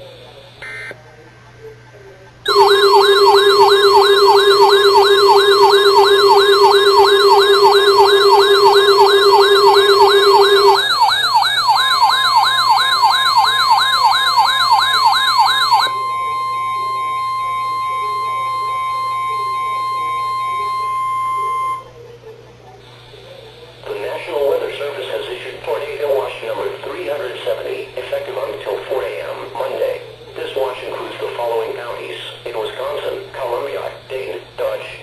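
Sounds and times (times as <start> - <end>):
steady lower tone: 2.5 - 10.9
electronic siren warbling: 2.5 - 21.8
steady high tone: 2.5 - 21.9.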